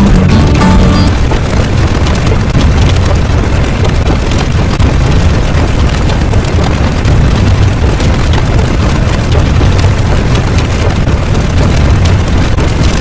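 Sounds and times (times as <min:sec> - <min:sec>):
deep rumble with crackles: 0:00.0 - 0:13.0.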